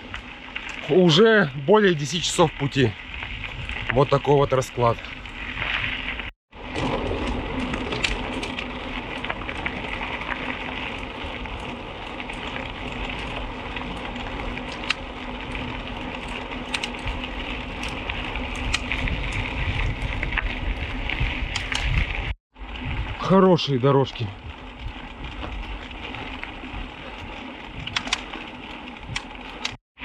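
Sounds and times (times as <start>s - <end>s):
bike tyres crunching on gravel: 0.0s - 30.0s
sharp clicks: 27.9s - 28.3s, 29.1s - 29.8s.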